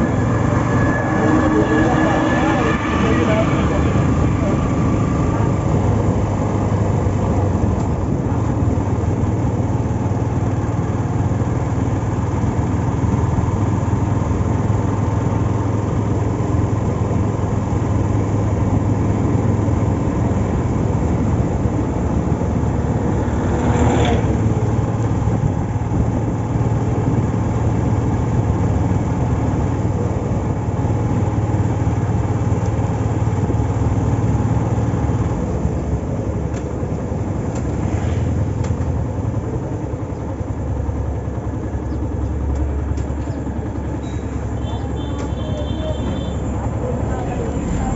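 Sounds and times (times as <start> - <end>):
high sound falling in pitch: 0.0 - 6.9
motorcycle engine running: 24.2 - 47.9.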